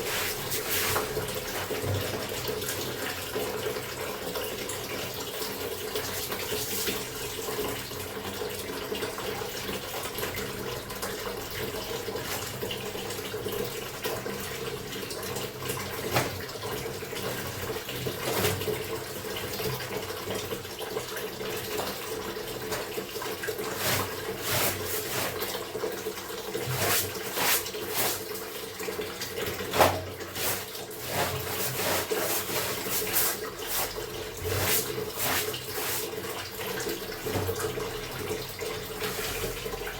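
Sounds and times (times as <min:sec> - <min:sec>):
tap water running into basin: 0:00.0 - 0:39.9
clothes splashing in water: 0:29.7 - 0:36.1.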